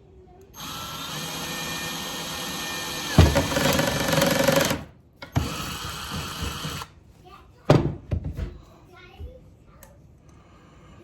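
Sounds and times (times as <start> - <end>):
electric drill running: 0.6 - 6.9.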